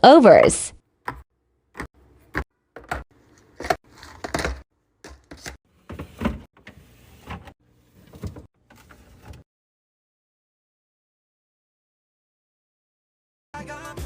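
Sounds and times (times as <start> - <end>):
containers scraping on shelves: 3.2 - 9.4.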